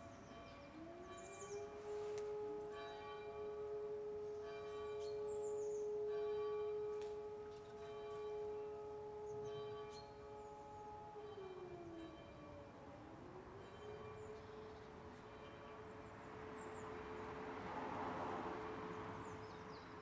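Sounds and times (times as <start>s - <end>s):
church bells ringing: 0.0s - 12.6s, 15.2s - 17.6s
siren holding a steady tone: 0.0s - 19.4s.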